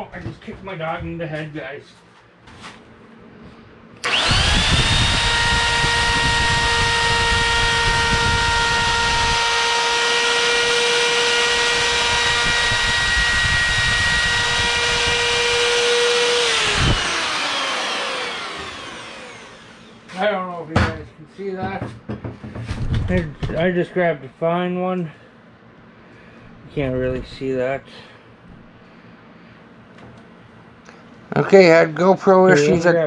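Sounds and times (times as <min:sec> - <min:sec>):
router motor whining: 0:04.0 - 0:20.2.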